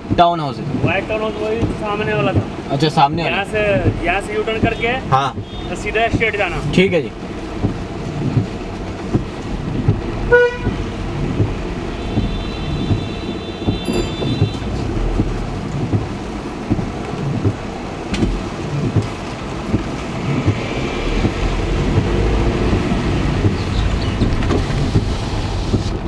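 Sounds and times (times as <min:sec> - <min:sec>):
car driving in heavy rain: 0:00.0 - 0:26.0
car horn honk: 0:03.6 - 0:06.7, 0:10.3 - 0:10.9, 0:11.8 - 0:15.4
higher-pitched horn: 0:12.0 - 0:15.2.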